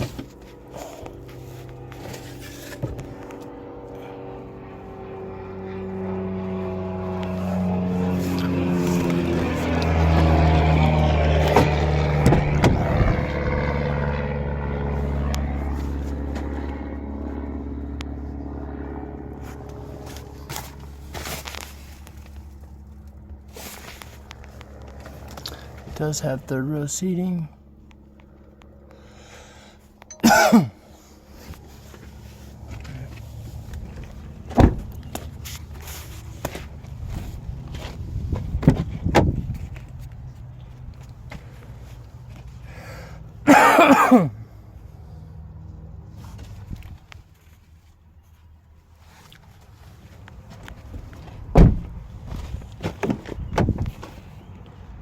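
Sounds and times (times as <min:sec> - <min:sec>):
handling clicks and scraping: 0:00.0 - 0:03.6
engine running: 0:00.0 - 0:55.0
heavy thump: 0:11.5 - 0:13.0, 0:51.6 - 0:51.9
knocks on vehicle body: 0:51.5 - 0:51.9.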